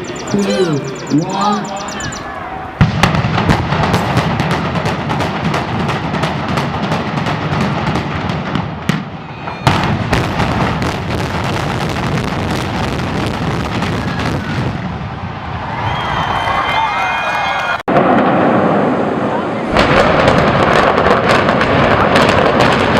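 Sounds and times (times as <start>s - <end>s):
demolition charges cracking: 19.6s - 22.9s.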